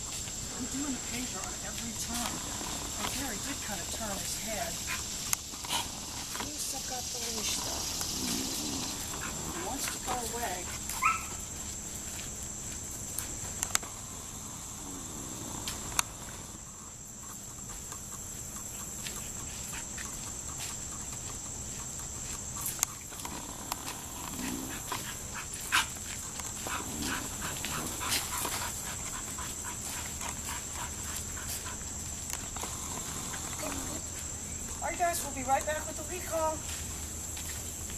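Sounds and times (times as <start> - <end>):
puppy whining: 10.9 - 11.4.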